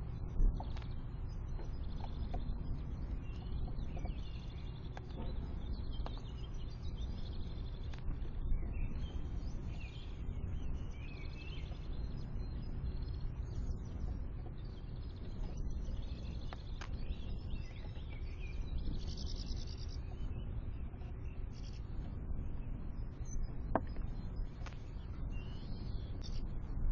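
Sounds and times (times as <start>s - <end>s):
low background rumble: 0.0s - 26.9s
small songbirds chirping: 0.0s - 26.9s
faint clicks: 0.4s - 8.3s, 13.8s - 20.3s.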